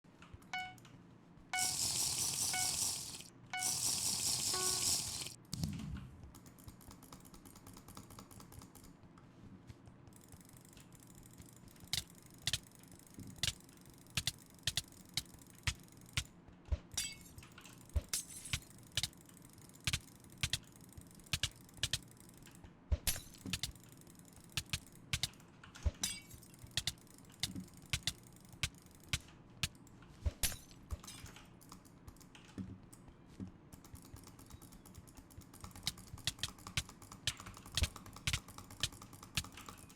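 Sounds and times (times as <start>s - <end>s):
computer mouse clicks: 10.2s - 16.3s, 18.8s - 22.6s, 23.4s - 25.4s, 26.6s - 30.0s, 33.7s - 39.9s.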